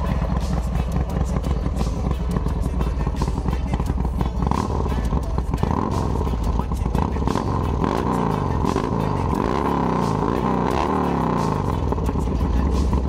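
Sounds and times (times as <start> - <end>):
motorcycle engine revving: 0.0 - 13.0.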